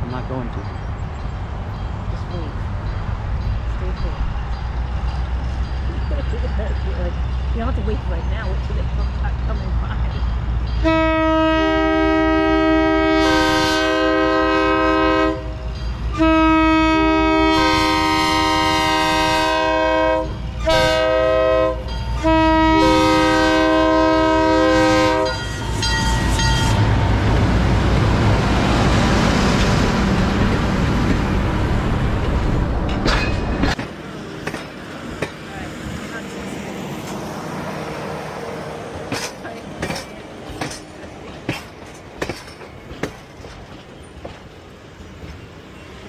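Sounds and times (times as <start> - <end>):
train rumbling past: 0.0 - 46.0
train air horn blasts: 10.8 - 25.5.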